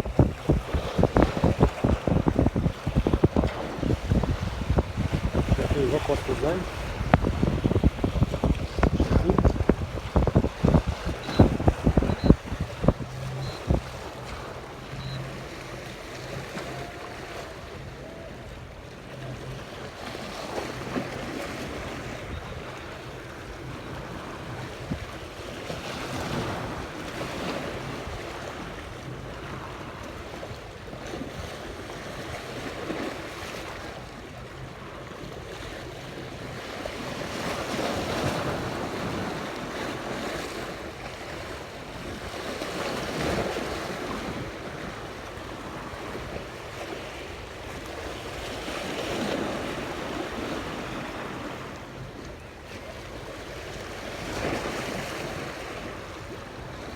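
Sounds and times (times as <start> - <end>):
wind buffeting microphone: 0.0 - 15.5
sea waves washing in: 0.0 - 56.9.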